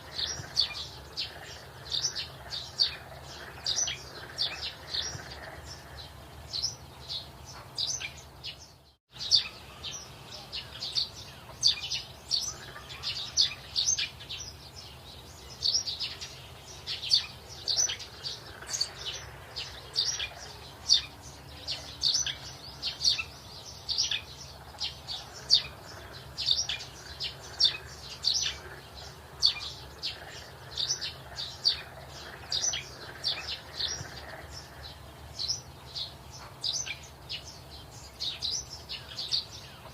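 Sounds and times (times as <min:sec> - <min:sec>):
low steady background hum: 0:00.0 - 0:39.9
small birds chirping: 0:00.0 - 0:39.9.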